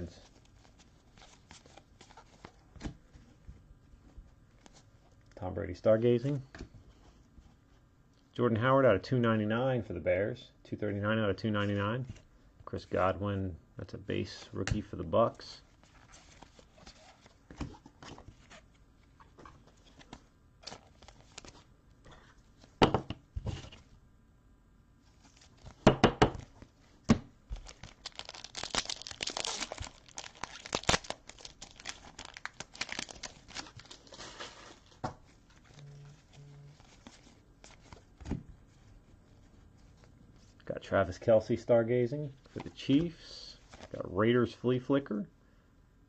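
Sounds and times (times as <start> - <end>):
wrapper tearing and crinkling: 27.5 - 36.2.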